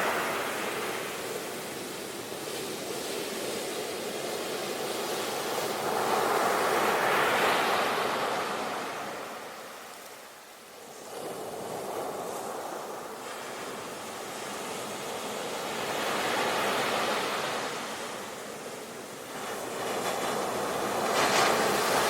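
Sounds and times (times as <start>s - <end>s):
ocean waves breaking on shore: 0.0s - 22.0s.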